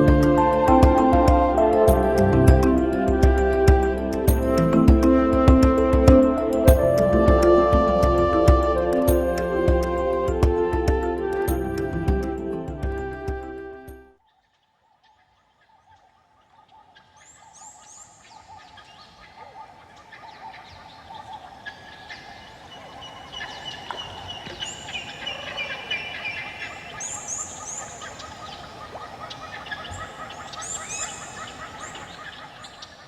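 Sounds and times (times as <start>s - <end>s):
birds chirping and calling: 0.0s - 5.2s, 15.1s - 33.0s.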